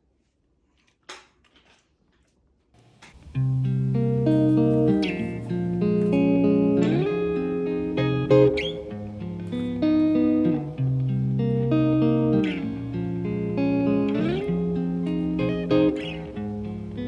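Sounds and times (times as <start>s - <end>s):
plucked guitar music: 3.1s - 17.0s.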